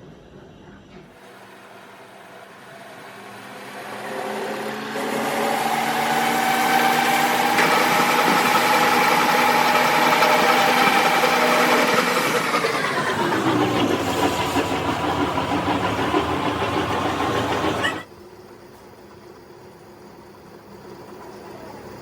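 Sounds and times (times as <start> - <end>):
workshop machine whining: 1.0 - 18.1.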